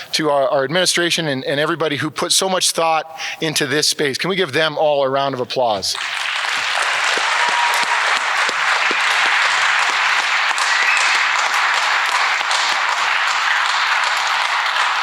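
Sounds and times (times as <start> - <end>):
audience applauding: 6.0 - 15.0.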